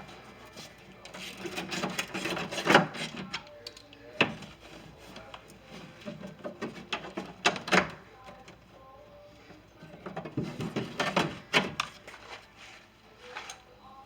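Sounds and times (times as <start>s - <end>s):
hand tools clicking and knocking: 0.5s - 8.6s, 9.5s - 12.2s.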